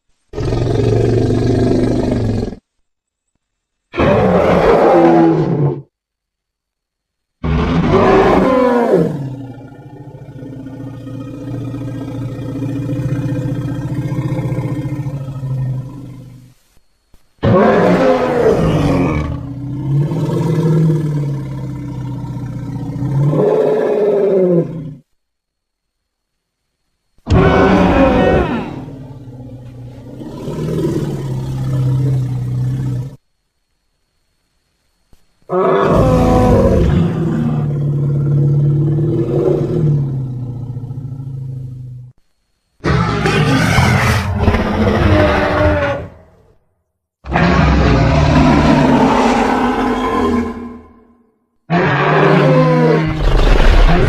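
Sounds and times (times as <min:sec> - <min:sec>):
rhinoceros roar: 0:47.2 - 0:51.0, 0:51.7 - 0:54.0
rhinoceros deep call: 0:51.7 - 0:54.0.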